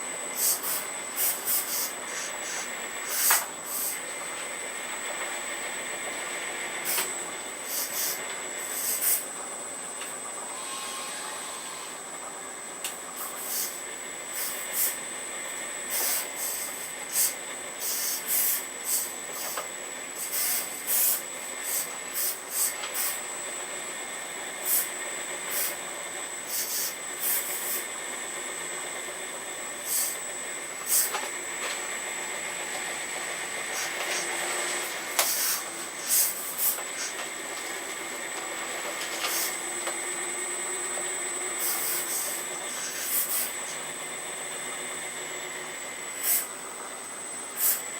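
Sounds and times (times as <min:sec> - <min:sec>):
hydraulic pump whine: 0:00.0 - 0:47.9
short hissing bursts: 0:00.4 - 0:04.0, 0:06.8 - 0:09.3, 0:13.2 - 0:15.0, 0:15.9 - 0:19.6, 0:20.2 - 0:23.3, 0:24.6 - 0:25.8, 0:26.5 - 0:27.9, 0:29.8 - 0:30.2, 0:30.8 - 0:31.2, 0:33.7 - 0:34.3, 0:34.9 - 0:37.2, 0:39.3 - 0:39.6, 0:41.6 - 0:43.8, 0:46.2 - 0:46.5, 0:47.6 - 0:47.9.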